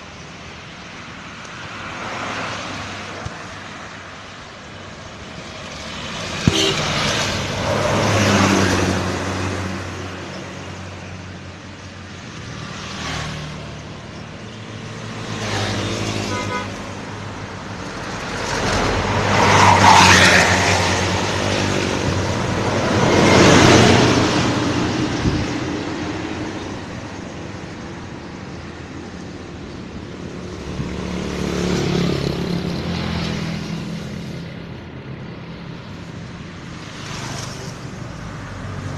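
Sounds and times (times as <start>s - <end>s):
buses passing: 0.0s - 38.9s
multi-tone bus horn blasts: 6.5s - 7.0s, 16.3s - 16.8s.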